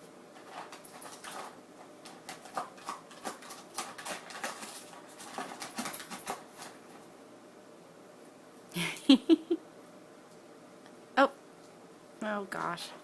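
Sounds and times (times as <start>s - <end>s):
cardboard clicks and scratches: 0.4s - 6.8s
dog chewing cardboard box: 0.4s - 7.1s.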